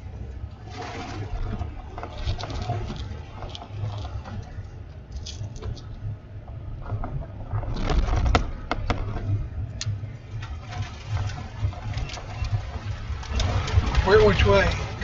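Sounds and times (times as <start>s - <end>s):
vehicle cabin rumble: 0.0s - 15.0s
sharp knocks and rattles: 6.8s - 15.0s.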